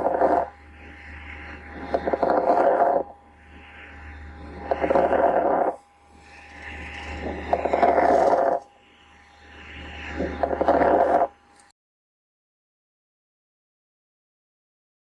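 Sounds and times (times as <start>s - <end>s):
lung breath sounds: 0.0s - 11.4s
faint steady hum: 0.0s - 11.7s.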